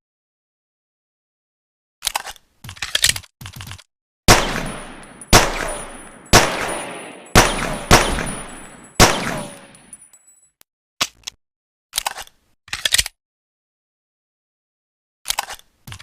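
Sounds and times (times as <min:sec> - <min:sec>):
pistol shots echoing: 0:04.3 - 0:10.0.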